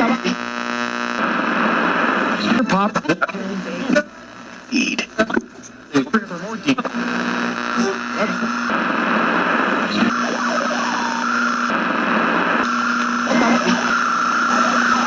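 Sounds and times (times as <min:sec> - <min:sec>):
radio static and hiss: 0:00.0 - 0:15.0
steady hum: 0:00.0 - 0:15.0.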